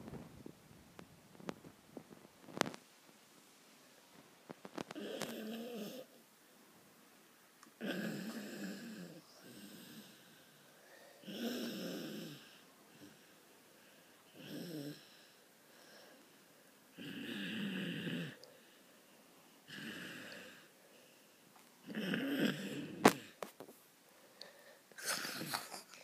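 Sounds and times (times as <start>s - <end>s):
cat snoring: 4.8s - 6.1s, 7.8s - 10.3s, 11.2s - 13.3s, 14.3s - 15.3s, 16.9s - 18.4s, 19.7s - 20.7s, 21.8s - 23.4s.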